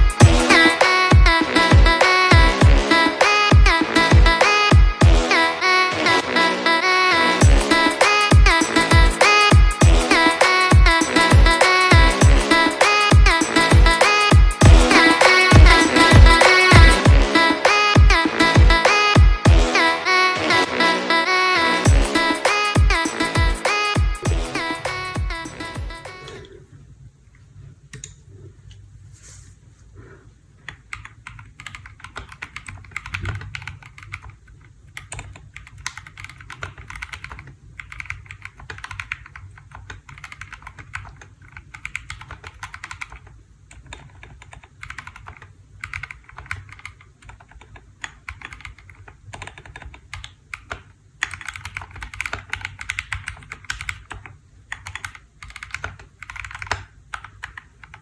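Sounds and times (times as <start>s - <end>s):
mechanical keyboard typing: 30.6s - 58.0s.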